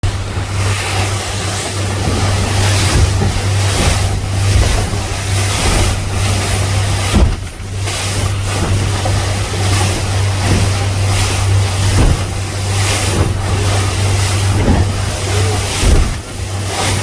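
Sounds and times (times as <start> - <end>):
hull slapping through choppy water: 0.0 - 17.0
speedboat engine drone: 0.0 - 17.0
wind buffeting microphone: 0.0 - 17.0.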